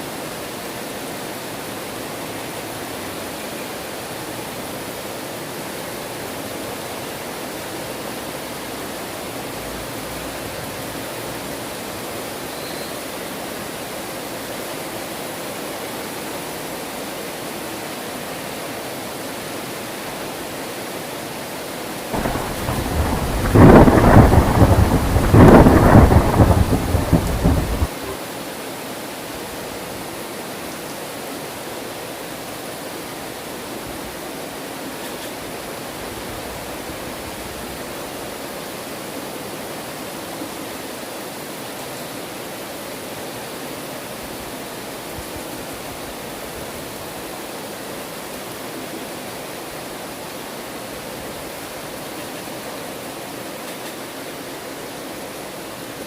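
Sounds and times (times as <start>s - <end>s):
heavy rain: 0.0s - 56.0s
rumbling thunderclap: 22.2s - 28.0s.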